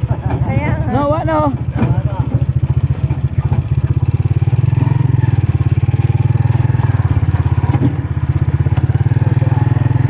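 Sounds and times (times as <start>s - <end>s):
small motorcycle engine running: 0.0s - 10.0s.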